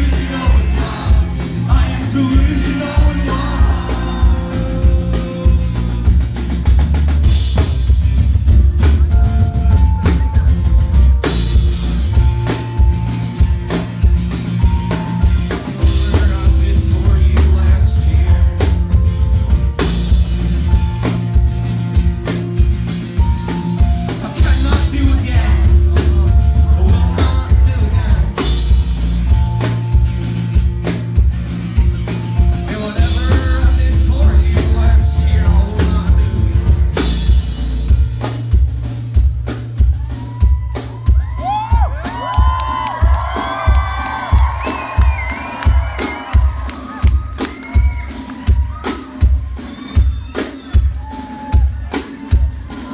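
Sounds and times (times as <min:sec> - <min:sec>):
voices singing and shouting: 0:00.0 - 0:06.1, 0:15.8 - 0:19.0, 0:24.2 - 0:28.8, 0:32.6 - 0:37.2
live rock band playing: 0:00.0 - 0:52.9
steady drum beat: 0:00.0 - 0:52.9.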